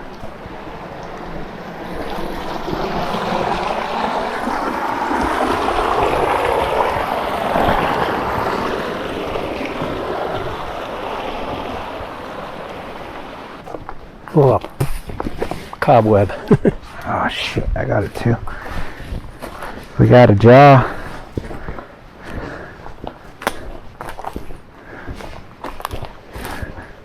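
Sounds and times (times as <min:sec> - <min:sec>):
creek water rushing: 0:00.0 - 0:27.0.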